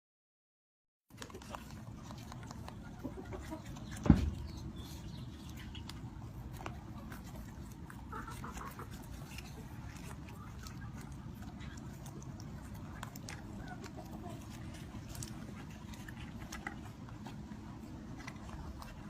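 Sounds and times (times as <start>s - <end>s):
chickens clucking: 1.2s - 19.0s
loud thump: 4.0s - 4.4s.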